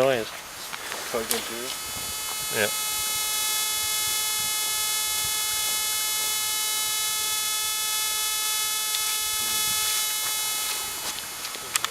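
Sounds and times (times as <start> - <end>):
steady humming tone: 0.0 - 11.9.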